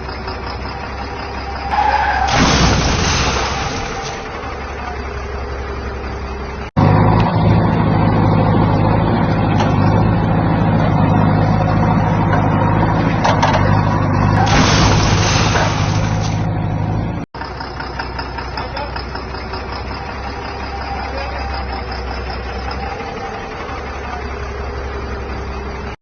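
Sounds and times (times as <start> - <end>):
diesel construction machinery running: 0.0 - 26.0
rushing noise: 1.7 - 4.7, 14.4 - 16.9.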